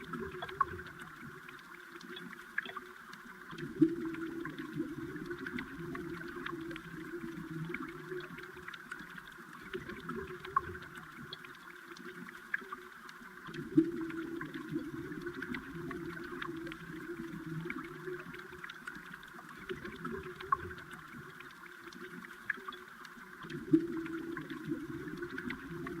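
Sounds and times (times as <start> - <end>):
river water rushing underwater: 0.0 - 26.0
small clicks: 0.3 - 3.7.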